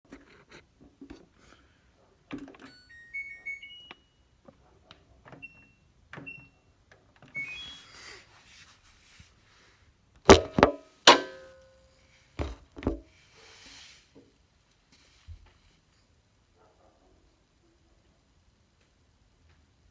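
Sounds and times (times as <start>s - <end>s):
washing machine beeping: 2.8s - 4.1s, 7.4s - 7.8s, 10.3s - 11.6s
loud thumps: 10.3s - 11.5s.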